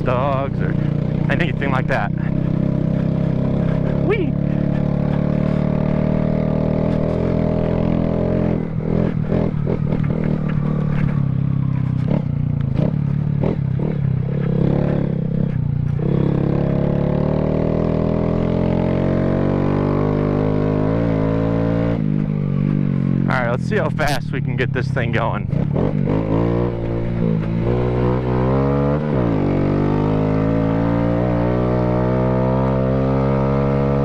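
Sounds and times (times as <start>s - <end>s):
motorcycle engine running: 0.0s - 34.0s.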